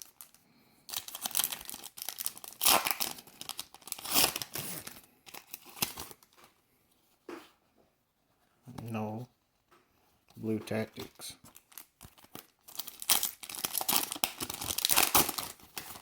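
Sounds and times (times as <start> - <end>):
foil wrapper crinkling and tearing: 0.0 - 6.4, 11.0 - 16.0.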